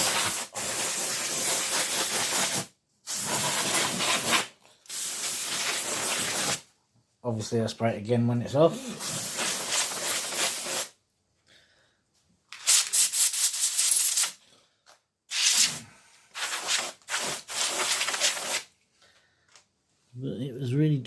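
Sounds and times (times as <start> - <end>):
compressed air spraying: 0.0 - 6.6, 8.8 - 10.9, 12.7 - 14.4, 15.3 - 15.8, 16.4 - 18.6.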